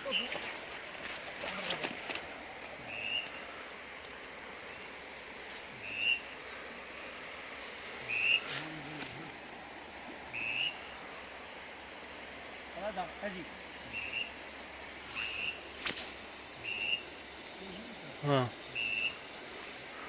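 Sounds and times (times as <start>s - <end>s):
background hiss: 0.0s - 20.0s
short rising whistles: 5.8s - 6.2s, 8.1s - 8.6s, 10.4s - 10.8s, 15.0s - 17.1s, 18.8s - 19.2s.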